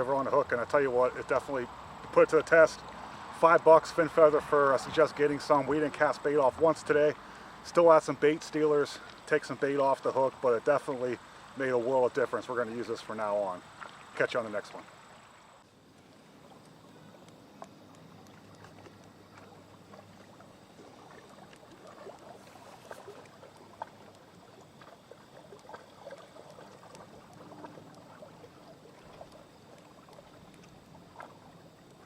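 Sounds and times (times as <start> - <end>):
small splashes and ticks: 0.0 - 32.0
water lapping at shore: 0.0 - 32.0.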